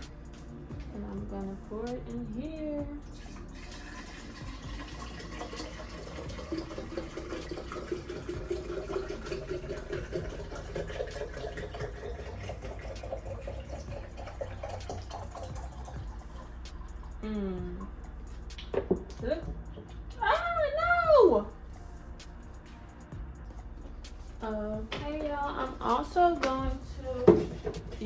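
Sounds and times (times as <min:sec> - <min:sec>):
juice glugging into jar: 0:03.1 - 0:17.2.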